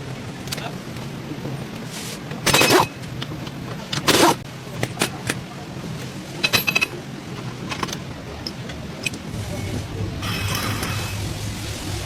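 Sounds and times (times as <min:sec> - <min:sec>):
ringing metallic clicks and clinks: 0:06.4 - 0:09.2.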